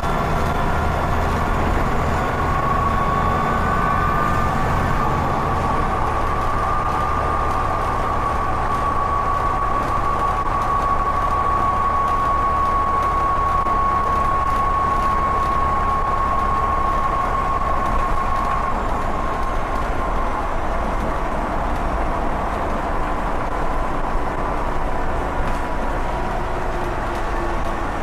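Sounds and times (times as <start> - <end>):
bus diesel engine drone: 0.0 - 28.0
turbocharger whistling: 0.5 - 19.7.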